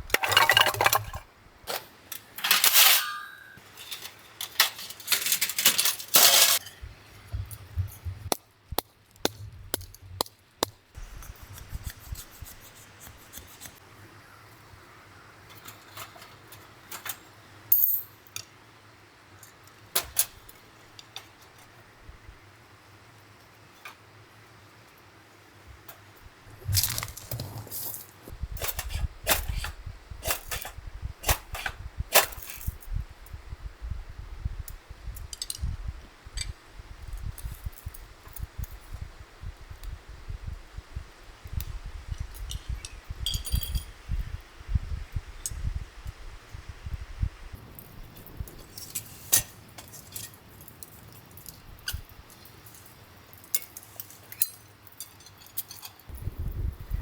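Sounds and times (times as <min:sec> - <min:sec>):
wind buffeting microphone: 0:26.2 - 0:48.8, 0:56.1 - 0:57.0
sharp clinks and knocks: 0:42.4 - 0:44.0.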